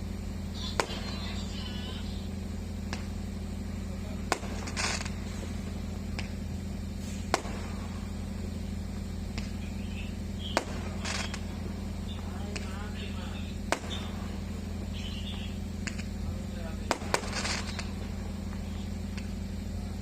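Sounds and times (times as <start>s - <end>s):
firecrackers cracking: 0.0s - 20.0s
steady low hum: 0.0s - 20.0s
short hiss: 6.9s - 8.2s.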